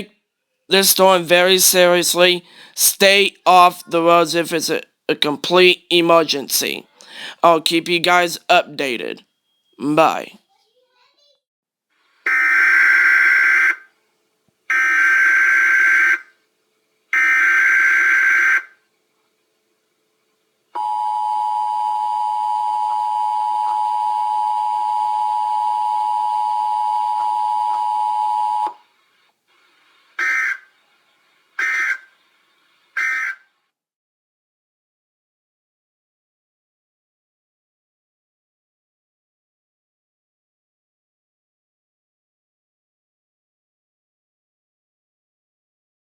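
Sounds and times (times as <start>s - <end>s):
two-tone attention signal: 20.8s - 28.8s.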